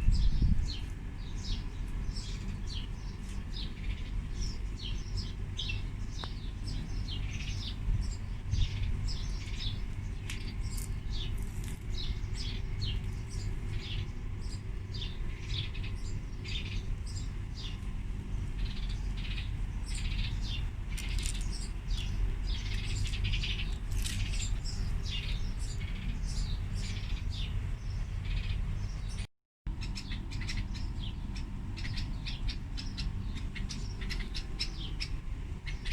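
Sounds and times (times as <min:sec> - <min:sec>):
small birds chirping: 0:00.0 - 0:35.9
steady low rumble: 0:00.0 - 0:35.9.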